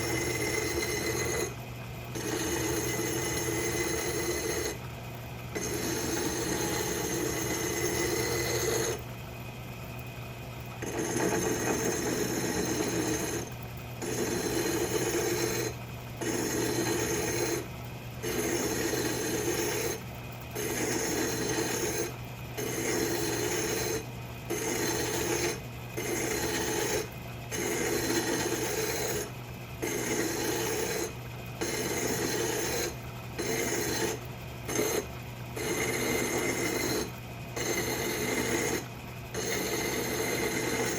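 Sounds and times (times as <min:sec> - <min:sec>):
lathe motor hum: 0:00.0 - 0:09.1, 0:10.6 - 0:40.9
hand file rasping on metal: 0:10.8 - 0:17.6, 0:18.2 - 0:20.0, 0:20.6 - 0:35.0, 0:35.6 - 0:38.8, 0:39.4 - 0:40.9.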